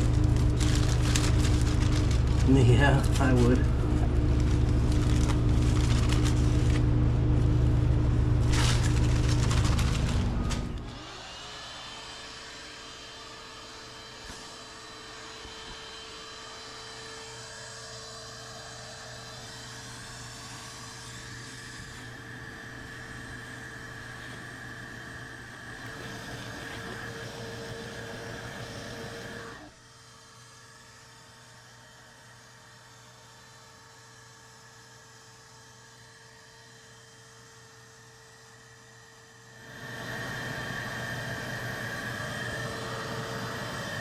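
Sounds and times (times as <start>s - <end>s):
faint hum with thin whine: 0.0s - 11.0s
electric motor humming: 0.0s - 29.8s, 39.5s - 44.0s.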